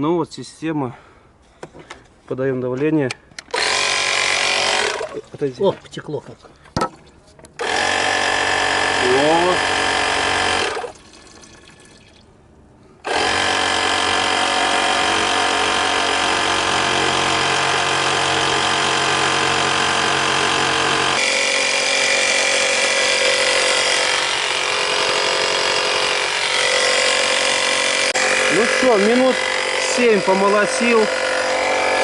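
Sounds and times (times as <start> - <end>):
air compressor running: 3.5 - 5.2, 7.6 - 10.9, 13.0 - 32.0.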